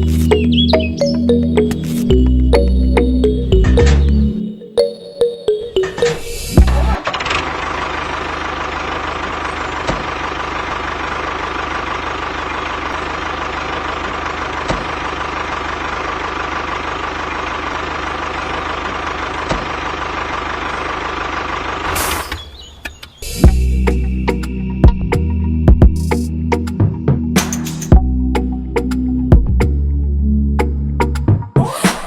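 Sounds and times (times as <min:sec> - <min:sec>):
tractor engine idling: 0:00.0 - 0:25.1.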